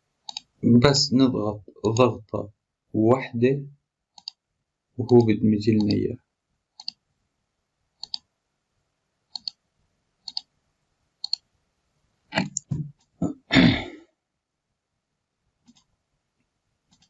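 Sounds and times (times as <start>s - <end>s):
computer mouse clicks: 0.2s - 0.6s, 4.2s - 4.4s, 5.1s - 6.0s, 6.8s - 7.0s, 8.0s - 8.3s, 9.3s - 9.6s, 10.2s - 10.5s, 11.2s - 11.5s, 15.6s - 15.9s
knocking sounds: 12.4s - 13.0s.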